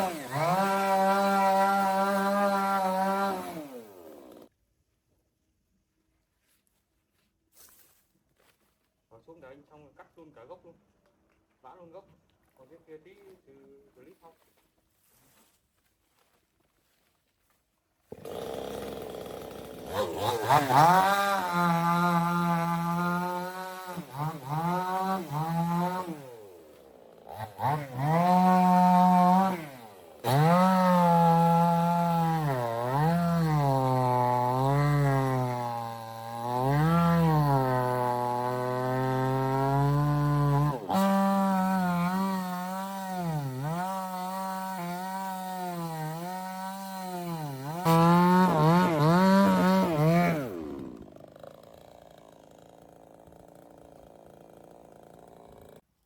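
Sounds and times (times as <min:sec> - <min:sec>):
chainsaw cutting wood: 0:00.0 - 0:04.5, 0:18.1 - 0:56.0.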